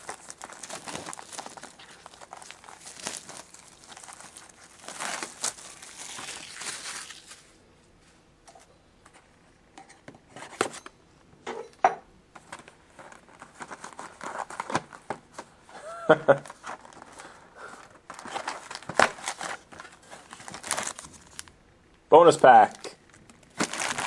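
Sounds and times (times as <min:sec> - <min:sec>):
packaging crinkling and tearing: 0:00.0 - 0:07.6, 0:12.4 - 0:15.6, 0:16.3 - 0:21.5, 0:22.4 - 0:24.0.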